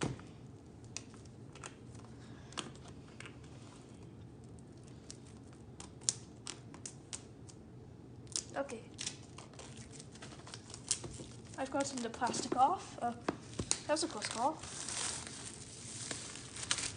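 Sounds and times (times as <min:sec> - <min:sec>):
fingernails scratching plastic wrap: 0:14.1 - 0:16.9.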